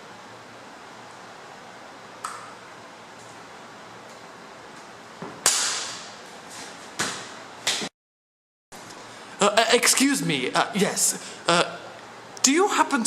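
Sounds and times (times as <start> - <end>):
sharp cracks: 5.4 - 6.2.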